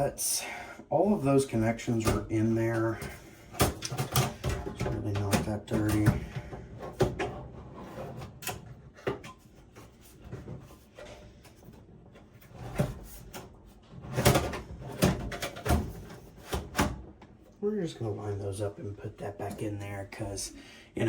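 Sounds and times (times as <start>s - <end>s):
computer parts clicking and knocking: 2.0s - 7.4s.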